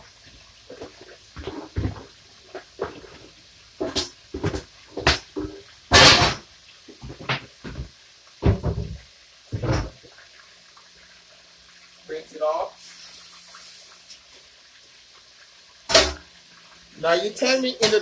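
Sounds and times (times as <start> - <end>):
pans and utensils clattering: 3.8 - 6.4, 15.9 - 16.2.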